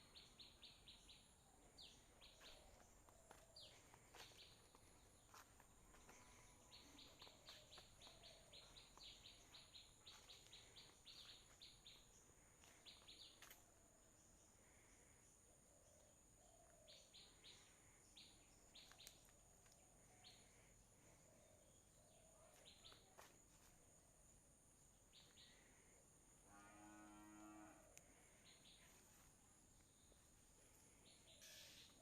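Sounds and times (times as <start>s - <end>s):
faint outdoor ambience: 0.0s - 32.0s
bird chirps: 31.0s - 32.0s.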